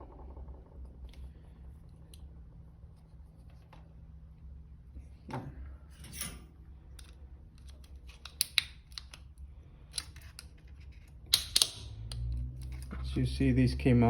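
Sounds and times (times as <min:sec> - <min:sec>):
screwdriver prying plastic clips: 0:11.3 - 0:12.2.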